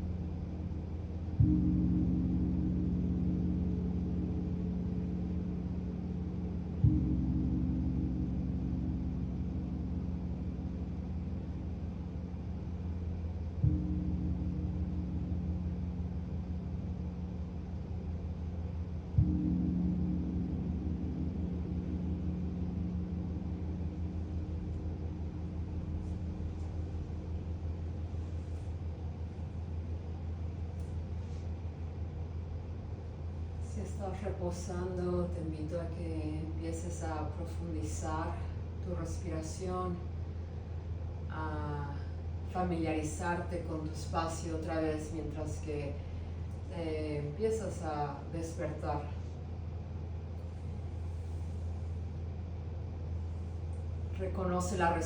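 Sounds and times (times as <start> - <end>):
gong ringing: 0.0 - 29.2.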